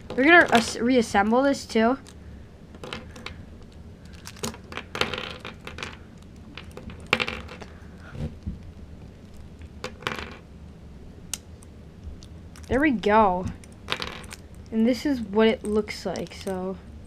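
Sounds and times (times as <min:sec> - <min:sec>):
plastic cube pieces clicking: 0:02.8 - 0:07.7.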